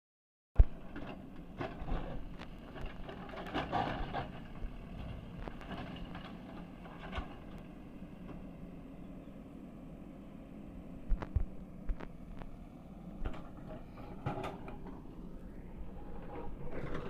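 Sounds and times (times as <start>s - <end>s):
knocks and clatter: 0.6s - 7.6s
diesel engine running: 0.6s - 17.0s.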